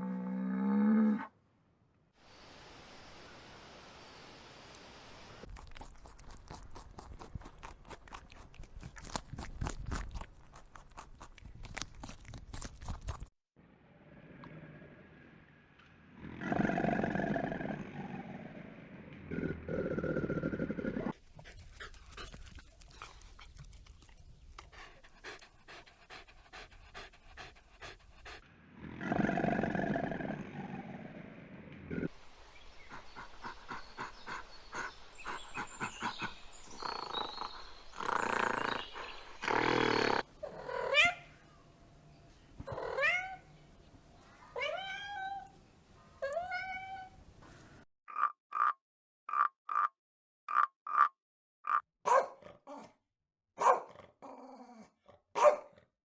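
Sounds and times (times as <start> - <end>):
rapid irregular crunching: 5.5 - 13.3
animal panting: 21.1 - 28.5, 32.8 - 40.2.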